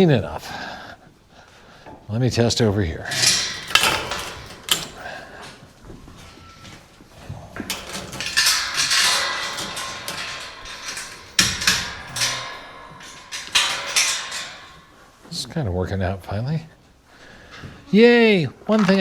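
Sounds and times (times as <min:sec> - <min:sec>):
clattering and scraping: 0:02.7 - 0:15.5.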